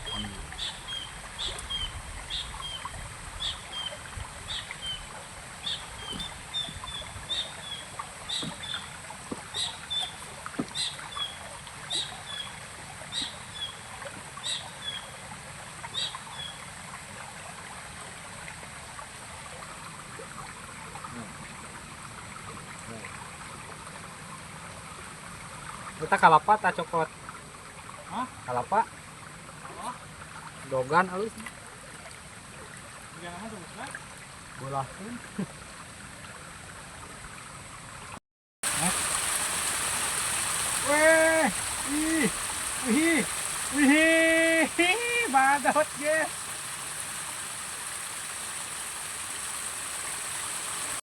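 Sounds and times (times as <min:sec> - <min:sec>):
running water: 0:00.0 - 0:51.0.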